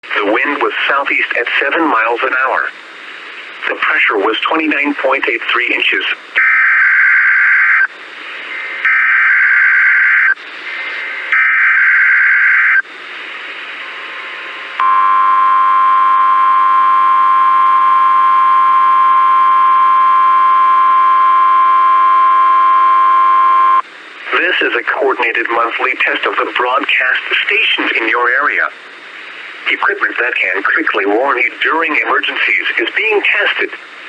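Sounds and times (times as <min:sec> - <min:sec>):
radio hiss: 0:00.0 - 0:34.0
harsh data bursts: 0:08.5 - 0:10.4
two-tone attention signal: 0:14.8 - 0:23.8.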